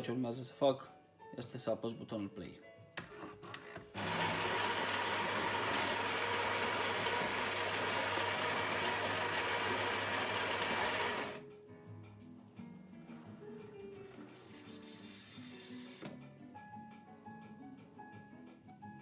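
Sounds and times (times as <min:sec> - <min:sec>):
espresso machine whirring: 0:04.0 - 0:11.4.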